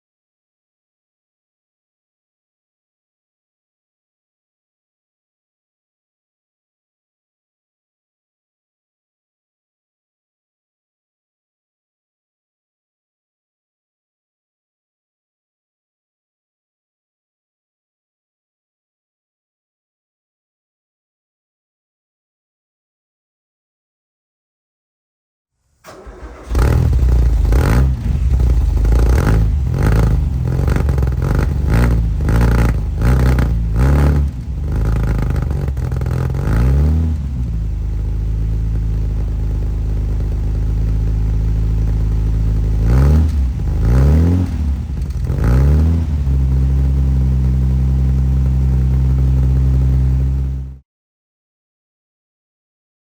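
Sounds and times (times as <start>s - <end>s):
car engine revving and idling: 25.9s - 50.8s.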